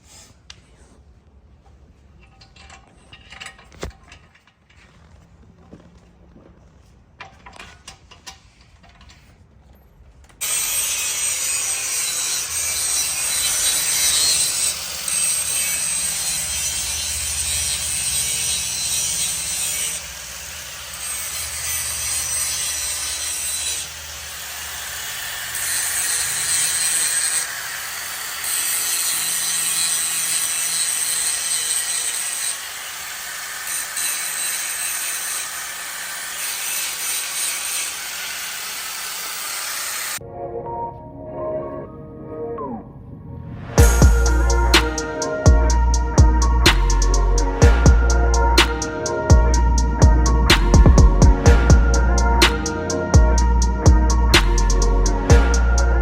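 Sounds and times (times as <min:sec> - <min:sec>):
power tool running: 0:10.4 - 0:40.2.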